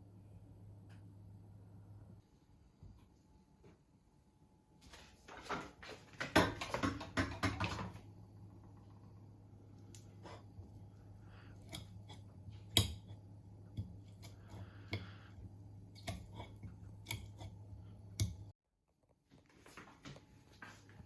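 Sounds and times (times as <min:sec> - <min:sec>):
low steady hum: 0:00.0 - 0:18.6
utensils knocking and clicking: 0:06.2 - 0:08.0.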